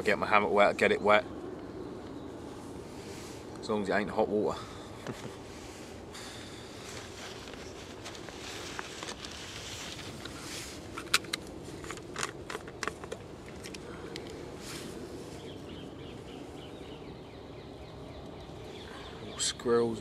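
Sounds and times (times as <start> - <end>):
rustling: 5.1 - 15.8.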